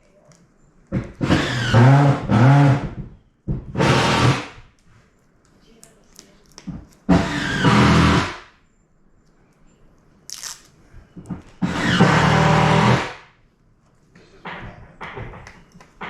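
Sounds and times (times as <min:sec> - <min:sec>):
power tool running: 0:01.2 - 0:03.0, 0:03.8 - 0:04.6, 0:07.1 - 0:08.4, 0:11.6 - 0:13.3.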